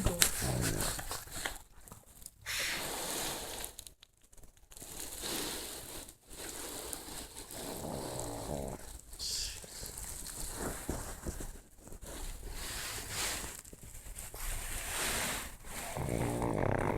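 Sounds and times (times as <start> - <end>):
dog snoring: 0.0 - 1.2, 7.5 - 9.0, 15.7 - 16.9.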